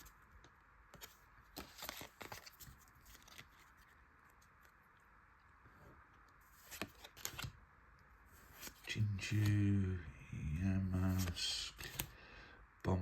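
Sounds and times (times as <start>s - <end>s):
cards and wrapper rustling: 0.0s - 4.8s, 6.5s - 7.6s, 8.4s - 9.6s, 11.0s - 12.2s.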